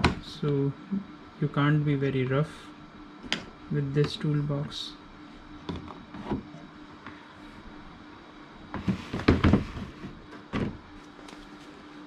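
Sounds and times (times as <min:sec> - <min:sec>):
plastic knocks and clatter: 0:08.8 - 0:10.8.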